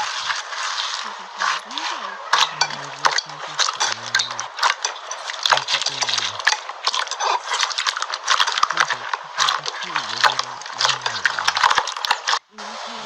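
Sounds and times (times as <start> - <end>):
slime crackling and popping: 0.0 - 12.4
low voice-like sound: 1.1 - 4.7, 5.5 - 6.5, 8.6 - 11.6.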